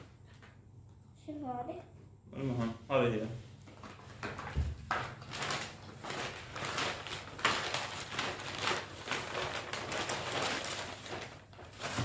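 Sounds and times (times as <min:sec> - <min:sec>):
packaging rustling and crinkling: 0:03.6 - 0:12.0.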